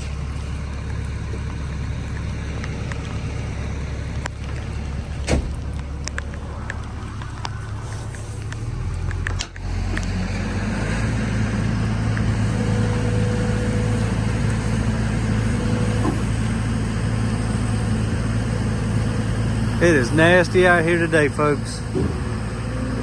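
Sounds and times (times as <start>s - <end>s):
heavy equipment engine running: 0.0s - 23.0s.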